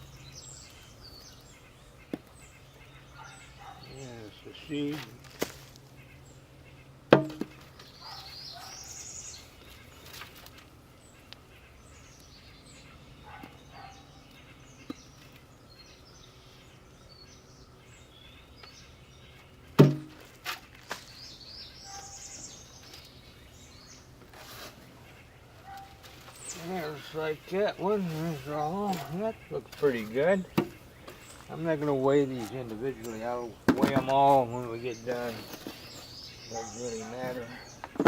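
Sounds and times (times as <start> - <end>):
birds chirping and singing: 0.0 - 38.0
sharp knock: 7.1 - 7.6, 19.8 - 20.1.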